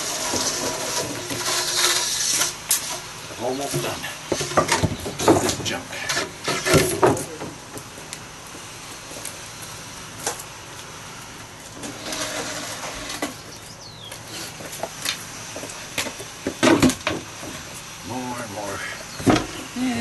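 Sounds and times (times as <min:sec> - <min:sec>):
knocks and clatter of junk: 0:03.7 - 0:07.9, 0:16.0 - 0:17.7.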